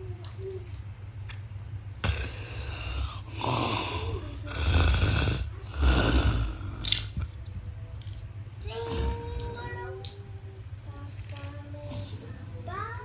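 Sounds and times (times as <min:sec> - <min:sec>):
man snoring: 0:02.0 - 0:07.2.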